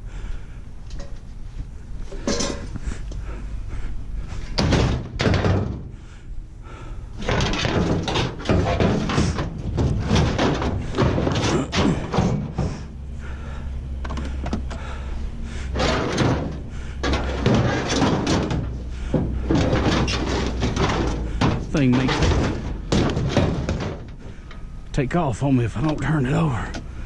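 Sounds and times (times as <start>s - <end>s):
scrap metal clanking into truck bed: 2.1s - 2.7s, 7.2s - 12.9s, 15.8s - 24.6s.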